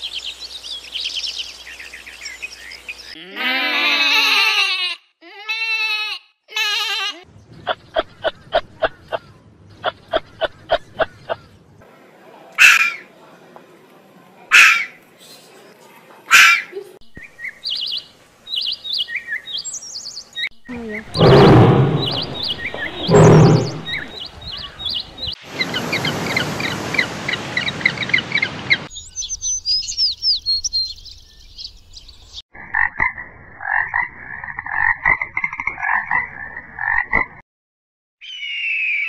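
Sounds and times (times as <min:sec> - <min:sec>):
quick chirping calls: 0:20.3 - 0:32.2
repeated croaking calls: 0:20.6 - 0:24.8, 0:32.6 - 0:37.4
loud rushing noise: 0:21.2 - 0:24.1.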